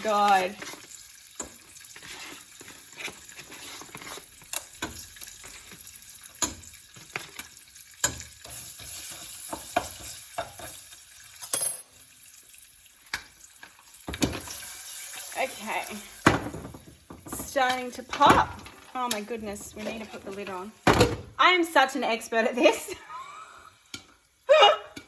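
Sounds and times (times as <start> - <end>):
oil crackling and spitting: 0.0 - 11.4
kernels sizzling in hot oil: 0.0 - 25.0.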